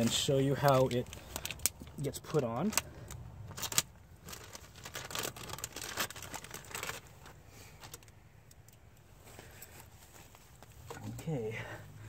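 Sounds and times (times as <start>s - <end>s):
package crinkling and tearing: 0.0s - 8.2s.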